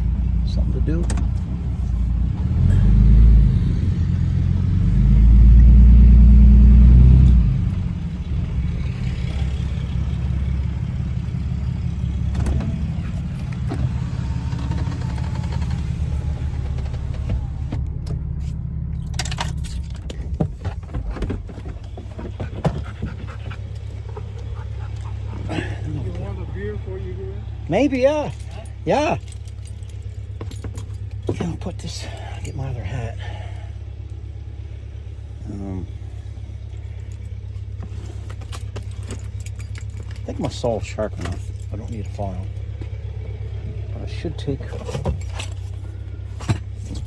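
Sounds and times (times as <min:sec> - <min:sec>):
vehicle engine revving: 0:00.0 - 0:47.0
knocks and clatters: 0:19.0 - 0:25.9, 0:28.3 - 0:31.8.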